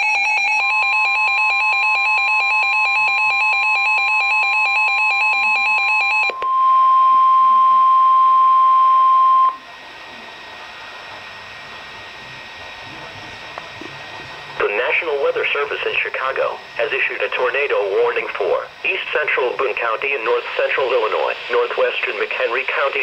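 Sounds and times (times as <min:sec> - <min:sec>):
two-pitch electronic alarm beep: 0:00.0 - 0:09.6
steady warning alarm tone: 0:00.0 - 0:23.0
faint radio hiss: 0:09.6 - 0:23.0.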